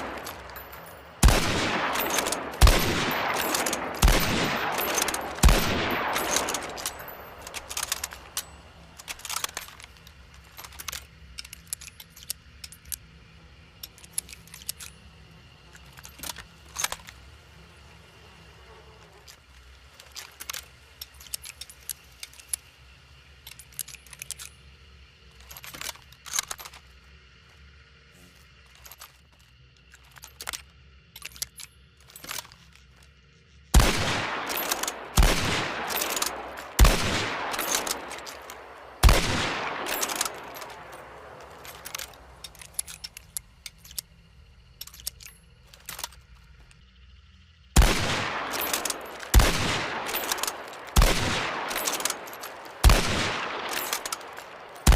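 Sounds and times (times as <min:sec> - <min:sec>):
rifle shots ringing: 0:00.0 - 0:09.7, 0:33.8 - 0:43.0, 0:47.8 - 0:54.9
rifle bolt metallic clicks: 0:00.0 - 0:13.1, 0:13.8 - 0:15.0, 0:15.8 - 0:17.2, 0:23.5 - 0:24.6, 0:25.4 - 0:26.8, 0:29.9 - 0:32.8, 0:33.8 - 0:46.8, 0:47.8 - 0:54.9.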